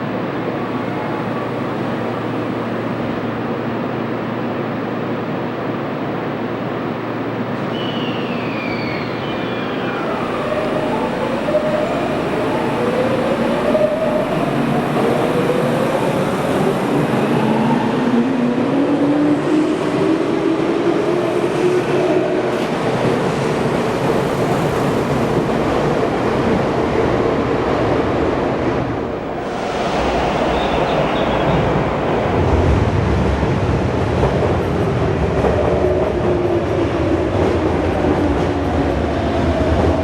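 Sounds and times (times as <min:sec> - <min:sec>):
wheels rumbling on rail: 0:22.5 - 0:40.0.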